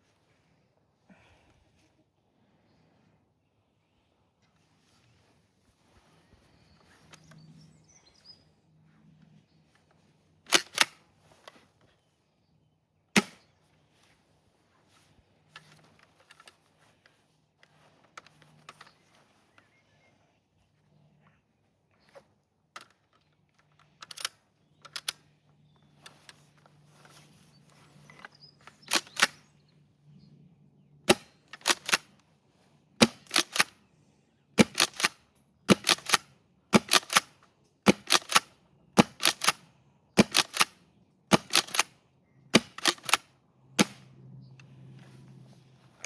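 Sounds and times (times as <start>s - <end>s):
shotgun pump racking clacks: 10.5s - 11.0s, 24.0s - 25.2s, 28.1s - 29.4s, 31.1s - 32.1s, 33.0s - 33.7s, 34.6s - 39.6s, 40.2s - 41.9s, 42.6s - 44.1s
handling clicks: 10.5s - 11.6s, 22.8s - 25.3s, 28.0s - 29.4s, 31.1s - 32.2s, 33.0s - 33.8s, 34.6s - 39.6s, 40.2s - 41.9s, 42.6s - 44.1s.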